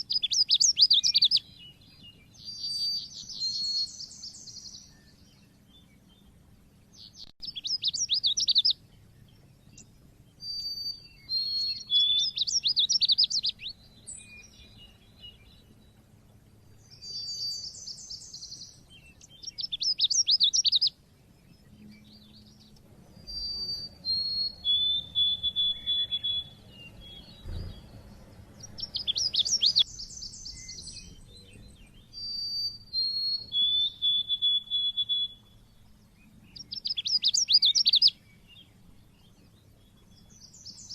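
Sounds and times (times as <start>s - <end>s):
bird chirping rapidly: 0.0s - 4.9s, 7.0s - 8.8s, 9.5s - 15.7s, 16.8s - 20.9s, 21.8s - 38.9s
bird whistling descending notes: 23.2s - 31.0s, 32.1s - 35.6s.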